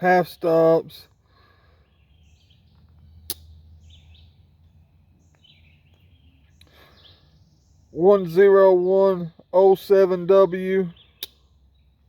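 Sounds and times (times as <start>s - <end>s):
faint bird chirps: 1.0s - 8.6s, 10.6s - 12.0s.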